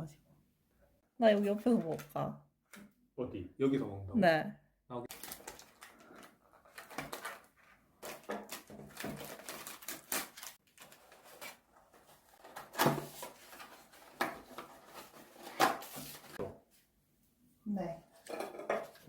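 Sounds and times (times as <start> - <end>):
food containers clattering: 18.2 - 19.0.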